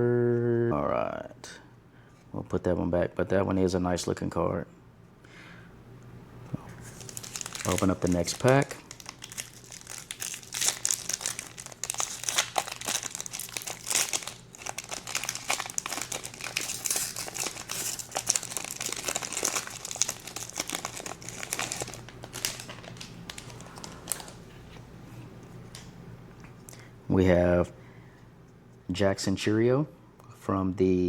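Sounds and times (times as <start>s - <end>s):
foil wrapper crinkling: 6.8s - 24.4s.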